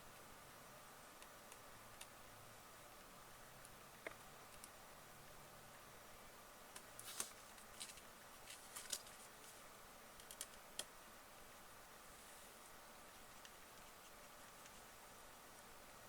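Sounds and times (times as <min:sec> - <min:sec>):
small hard parts clicking: 0:10.2 - 0:10.9.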